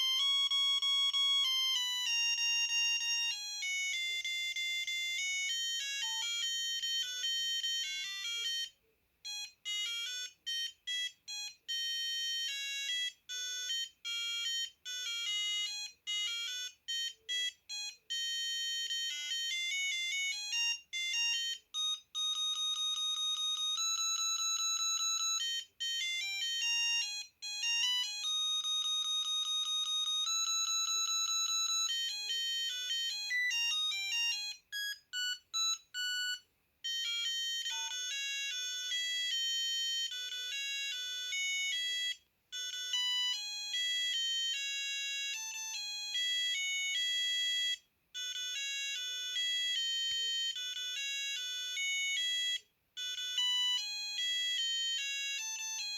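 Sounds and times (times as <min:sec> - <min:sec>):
mobile phone ringtone melodies: 0:00.0 - 0:55.9.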